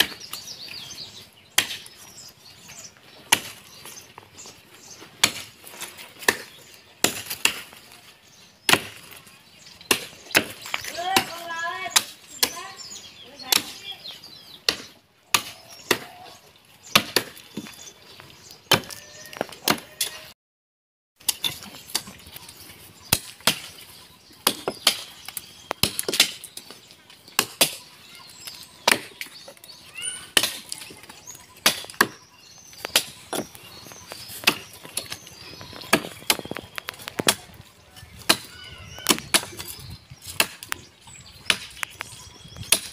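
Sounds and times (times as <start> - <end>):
axe chopping tree trunk: 1.5 - 2.0, 3.2 - 3.7, 5.2 - 7.9, 8.6 - 9.2, 9.9 - 12.6, 14.6 - 16.2, 16.9 - 17.8, 18.7 - 19.0, 19.6 - 20.1, 23.1 - 23.8, 24.4 - 27.9, 28.8 - 29.5, 30.3 - 30.9, 31.6 - 42.0, 42.6 - 42.9.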